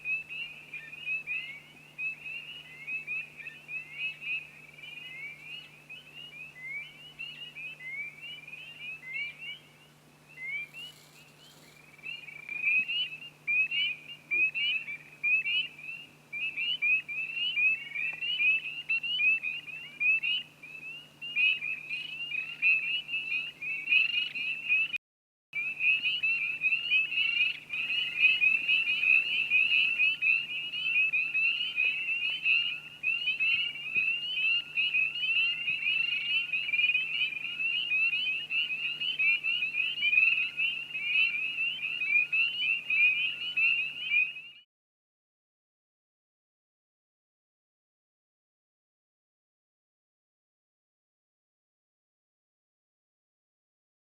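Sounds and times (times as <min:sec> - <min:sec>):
faint low hum: 0:25.6 - 0:44.0
chorus of frogs peeping: 0:25.6 - 0:44.6.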